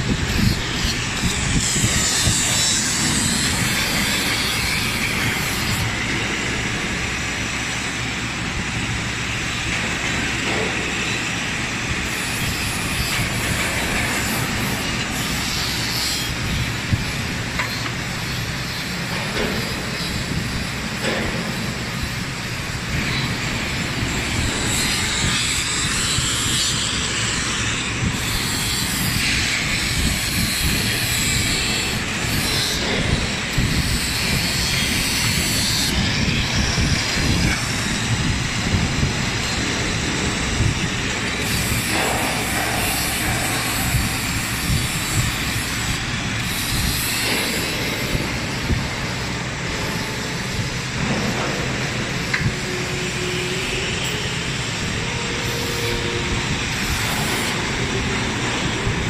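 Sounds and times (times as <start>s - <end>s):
milling machine cutting metal: 0.0s - 59.0s.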